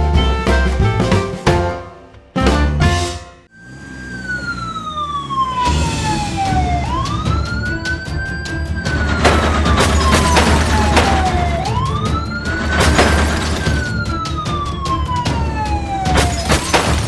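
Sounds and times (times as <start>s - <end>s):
background music: 0.0s - 3.5s, 5.7s - 17.0s
siren wailing: 3.4s - 17.0s
sharp knocks clattering: 8.9s - 14.6s, 16.1s - 17.0s.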